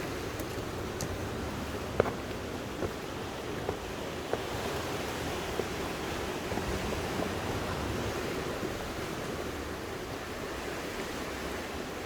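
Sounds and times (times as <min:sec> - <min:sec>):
sea waves: 0:00.0 - 0:12.0
wind: 0:00.0 - 0:12.0
light footsteps: 0:00.3 - 0:05.9.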